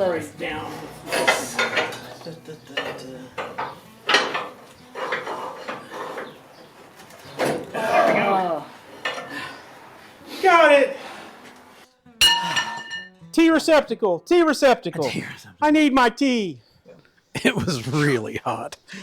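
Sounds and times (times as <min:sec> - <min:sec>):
metal tools clinking and knocking: 0:12.2 - 0:13.1.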